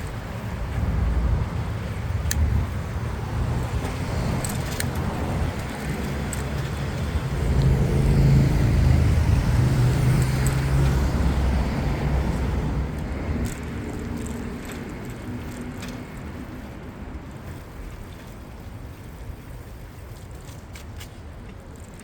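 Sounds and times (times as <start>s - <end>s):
road noise rumble: 0.0s - 22.0s
vehicle engine passing: 3.2s - 12.9s.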